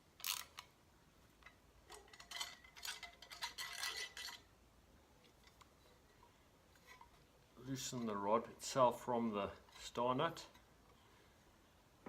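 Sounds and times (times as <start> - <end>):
metal spanner clinking and scraping: 1.4 - 4.5.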